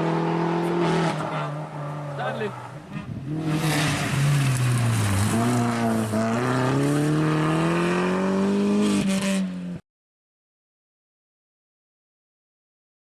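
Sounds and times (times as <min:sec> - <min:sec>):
car engine accelerating hard: 0:00.0 - 0:09.8.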